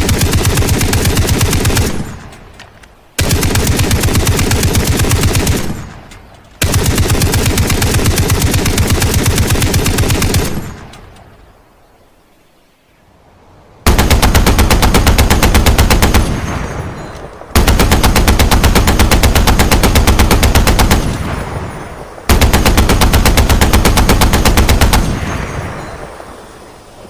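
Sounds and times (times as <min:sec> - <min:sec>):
heavy machine gun bursts: 0:13.9 - 0:26.1
echoing gunfire tail: 0:13.9 - 0:26.2.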